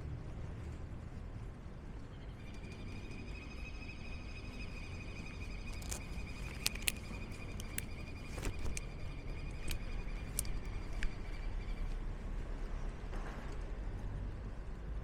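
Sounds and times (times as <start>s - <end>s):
low traffic rumble: 0.0s - 15.0s
steady high whine: 2.0s - 12.1s.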